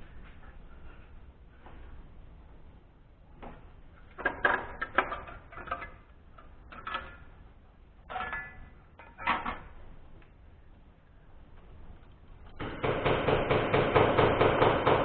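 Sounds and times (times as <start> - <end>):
metal tools clinking and clanking: 8.1 - 9.6.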